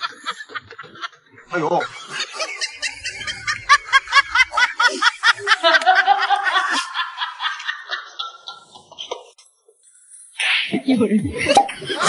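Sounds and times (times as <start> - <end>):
high-pitched laughing: 0.0 - 9.3.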